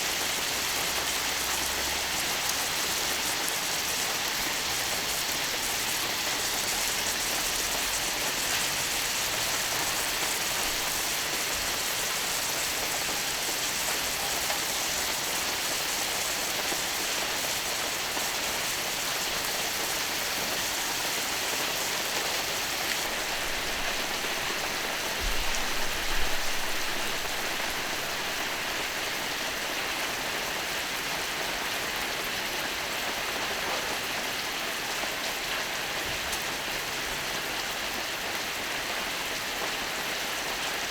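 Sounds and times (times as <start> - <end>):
steak sizzling on a griddle: 0.1 - 30.0.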